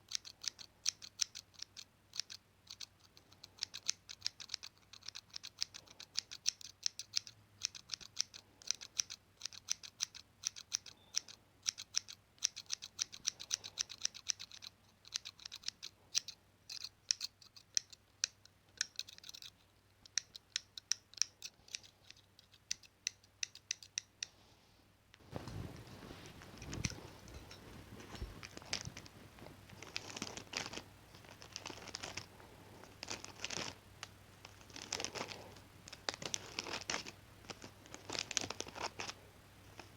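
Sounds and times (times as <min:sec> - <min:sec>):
material crinkling and rustling: 0:25.2 - 0:39.9.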